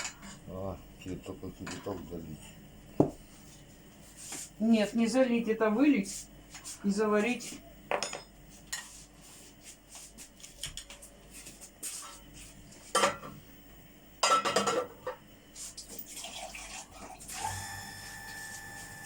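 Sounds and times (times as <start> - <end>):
dishes and cutlery clinking: 7.9 - 8.9, 14.2 - 15.2.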